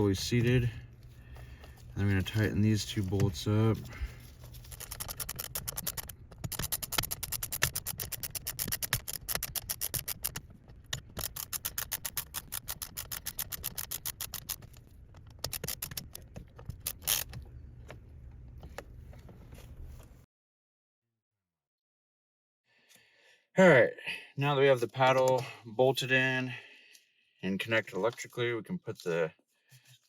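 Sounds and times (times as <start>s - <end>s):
ratchet clicking: 4.6s - 10.4s, 11.0s - 16.2s, 16.8s - 17.3s.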